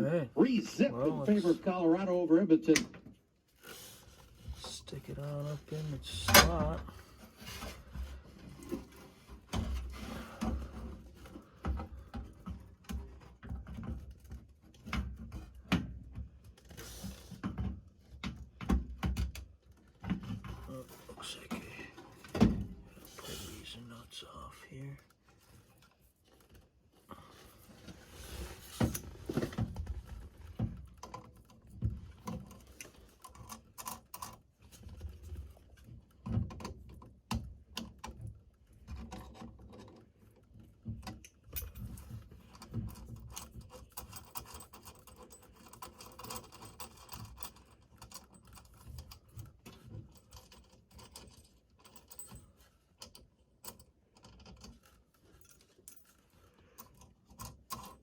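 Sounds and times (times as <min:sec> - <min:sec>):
small metal clicks and rattles: 0:29.2 - 0:58.0.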